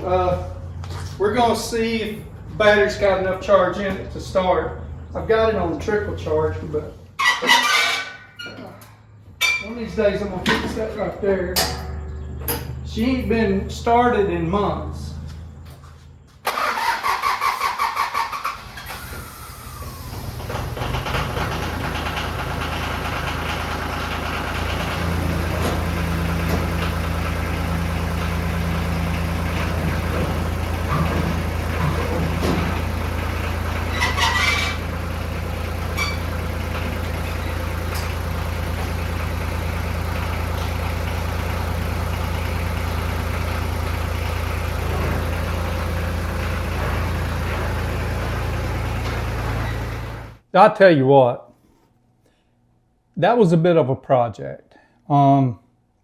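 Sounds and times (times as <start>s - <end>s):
diesel tractor engine idling: 0.0s - 7.8s, 9.0s - 50.5s
engine clatter: 16.4s - 50.4s.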